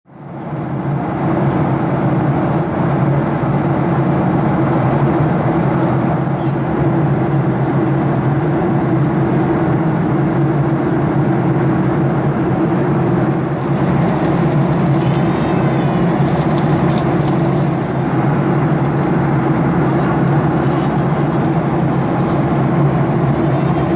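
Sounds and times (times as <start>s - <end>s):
constant low hum: 0.2s - 23.9s
jet engines droning: 0.2s - 23.9s
rushing airflow: 9.6s - 23.9s.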